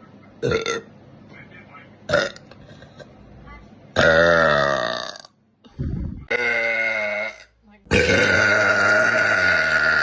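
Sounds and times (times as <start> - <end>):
woman burping: 0.4 - 0.9, 2.1 - 3.1, 4.0 - 5.4, 6.3 - 10.0.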